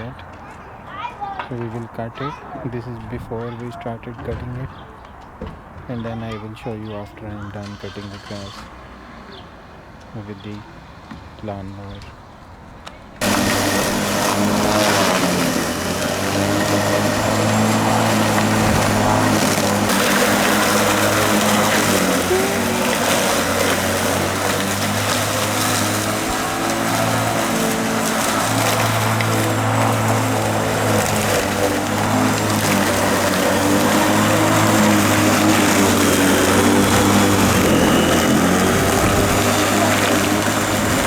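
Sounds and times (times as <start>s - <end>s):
electric lawn mower running: 7.5s - 11.0s, 13.2s - 41.0s.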